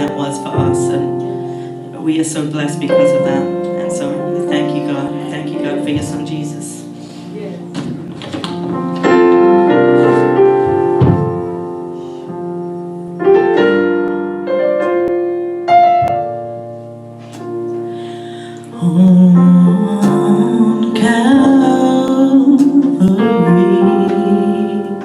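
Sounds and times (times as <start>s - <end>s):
slow piano chords: 0.0s - 25.0s
person singing: 18.4s - 25.0s.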